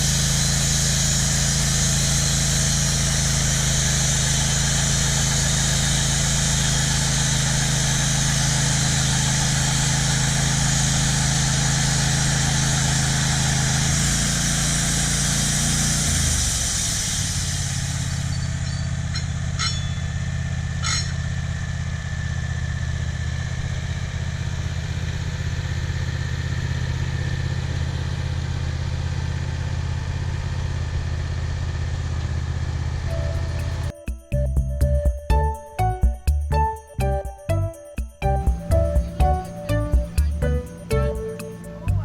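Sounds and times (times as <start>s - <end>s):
high hiss: 0.0s - 20.0s
sawmill engine running: 0.0s - 42.0s.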